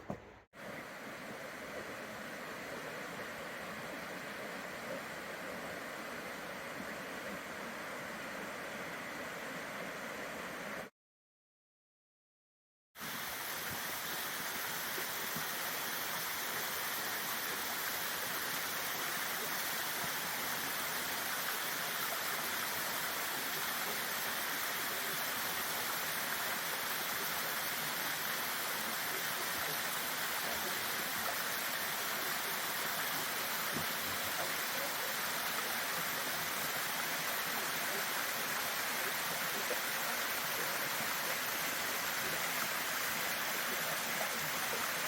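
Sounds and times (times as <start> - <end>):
waterfall rushing: 13.0 - 45.0.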